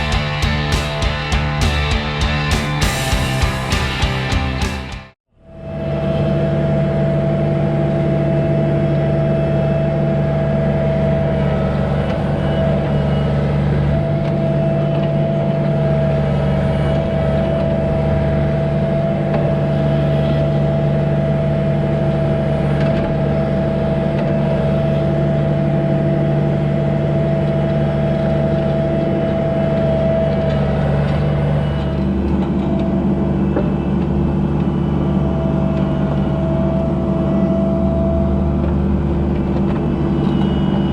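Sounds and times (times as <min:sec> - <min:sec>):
engine droning: 0:00.0 - 0:40.9
high whine: 0:00.0 - 0:40.9.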